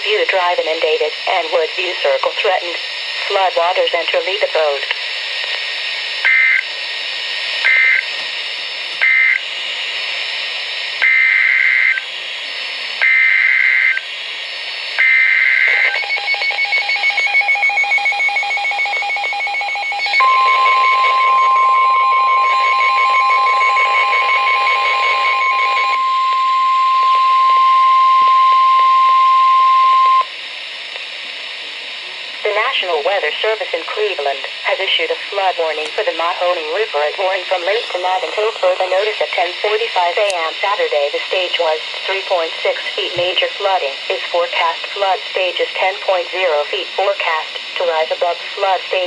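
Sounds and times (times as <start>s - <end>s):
steady warning alarm tone: 6.2s - 6.6s, 7.6s - 8.1s, 9.0s - 9.4s, 11.0s - 12.0s, 13.0s - 14.0s, 14.6s - 30.3s
rapidly pulsing two-tone beep: 15.6s - 30.3s.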